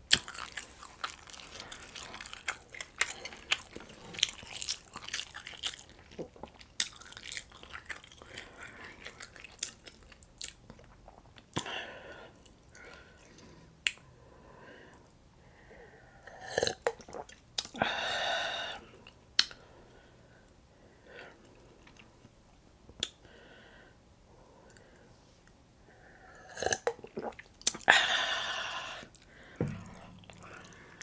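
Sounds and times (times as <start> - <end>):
person chewing food: 0.0 - 11.7, 26.5 - 31.0.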